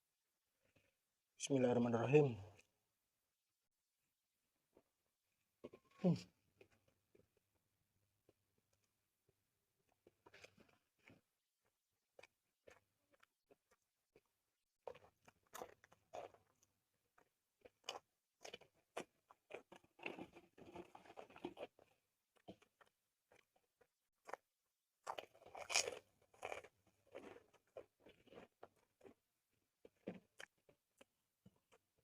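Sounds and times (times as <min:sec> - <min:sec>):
wet chewing noise: 0:09.9 - 0:32.0
crunching bites: 0:25.0 - 0:29.2.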